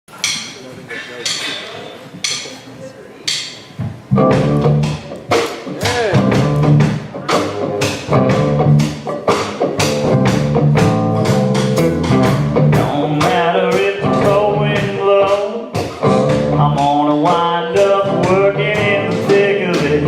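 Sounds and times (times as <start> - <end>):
guitar strumming: 4.1 - 20.0
person singing: 5.7 - 6.4, 12.8 - 20.0.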